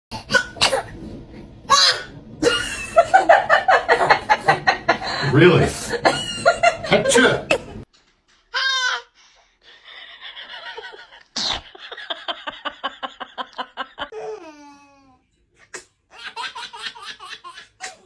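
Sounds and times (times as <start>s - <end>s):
baby sneezing: 0.2s - 0.9s, 17.8s - 18.0s
baby laughing: 13.1s - 18.0s.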